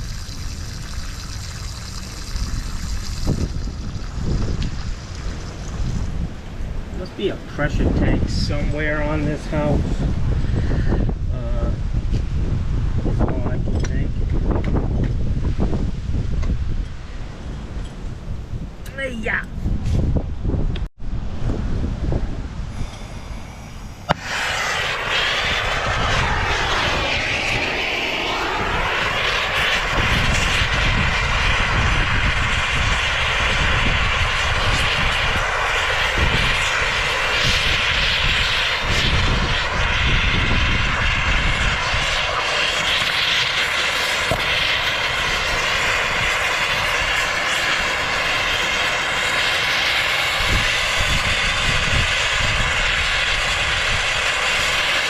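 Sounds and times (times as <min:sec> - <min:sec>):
torch flame rushing: 0:00.0 - 0:18.6, 0:21.4 - 0:55.0
torch lighting pop: 0:24.0 - 0:27.6, 0:44.2 - 0:44.6.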